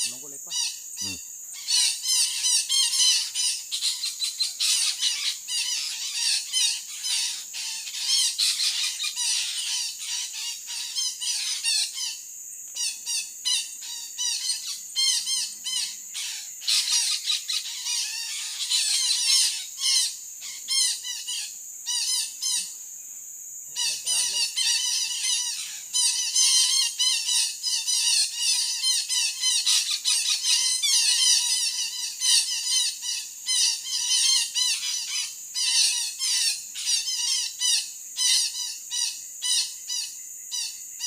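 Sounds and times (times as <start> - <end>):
parakeets squawking: 23.8 - 27.0.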